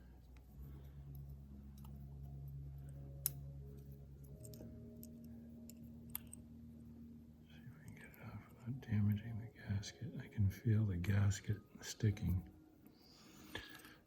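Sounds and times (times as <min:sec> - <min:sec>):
faint low hum: 0:00.0 - 0:14.0
watch parts clicking: 0:02.9 - 0:06.5.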